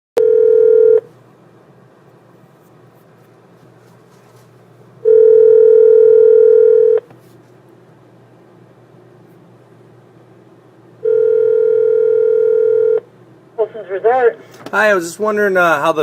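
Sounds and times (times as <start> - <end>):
telephone ringback tone: 0.2 - 1.1, 5.0 - 7.0, 11.0 - 13.0.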